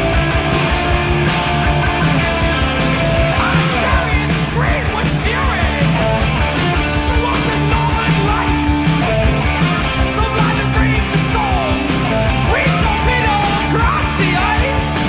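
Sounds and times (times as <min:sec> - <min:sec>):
rock music with singing: 0:00.0 - 0:15.0.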